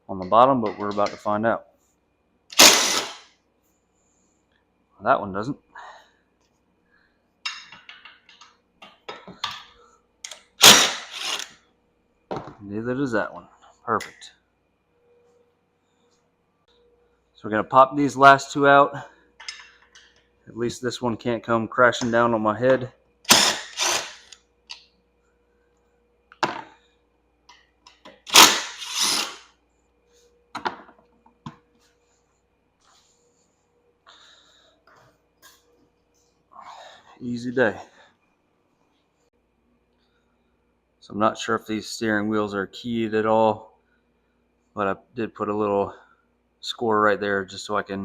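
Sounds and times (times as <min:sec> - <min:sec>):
parts clattering and scraping: 0:07.5 - 0:11.6, 0:19.4 - 0:20.3, 0:27.6 - 0:29.5.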